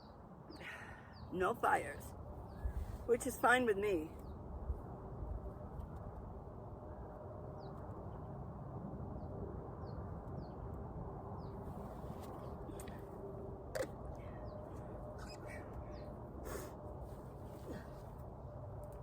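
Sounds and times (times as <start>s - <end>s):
low background rumble: 0.9s - 8.2s
faint bird chirps: 14.3s - 16.2s.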